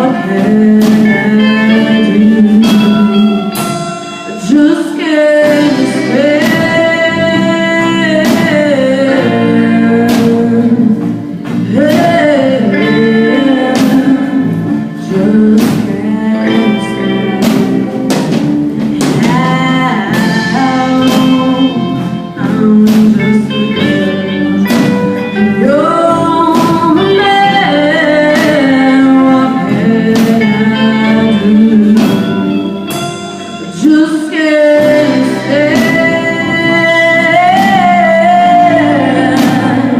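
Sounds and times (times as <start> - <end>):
guitar: 0.0 - 39.9
person singing lead vocal: 0.0 - 39.9
drum hits: 24.6 - 25.7.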